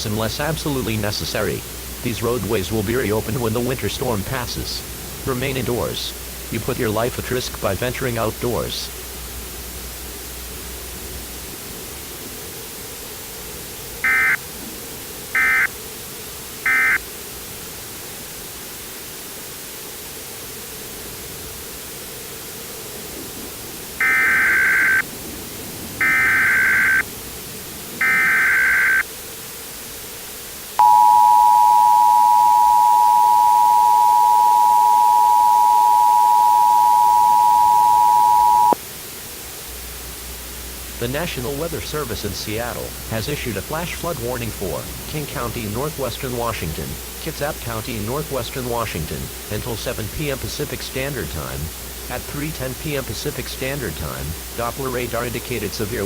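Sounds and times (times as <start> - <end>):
constant hiss: 0.0 - 56.0
data tone bursts: 14.0 - 14.4, 15.4 - 15.7, 16.6 - 17.0, 24.0 - 25.0, 26.0 - 27.0, 28.0 - 29.0, 30.8 - 38.8
two-tone attention signal: 14.0 - 14.4, 30.8 - 38.8.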